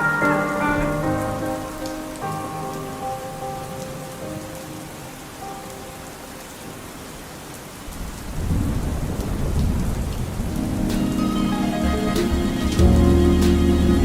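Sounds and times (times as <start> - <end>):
deep thunder rumble: 0.0 - 2.5, 7.9 - 12.0
steady rain: 0.0 - 14.0.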